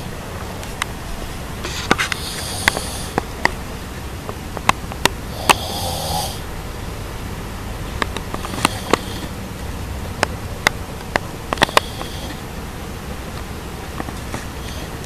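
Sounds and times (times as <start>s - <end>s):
person snoring: 1.7s - 3.2s, 5.3s - 6.5s, 8.4s - 9.4s, 11.6s - 12.4s.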